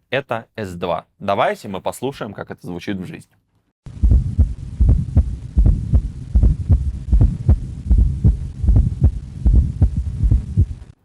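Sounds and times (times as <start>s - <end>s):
heartbeat gallop thuds: 4.0s - 10.8s.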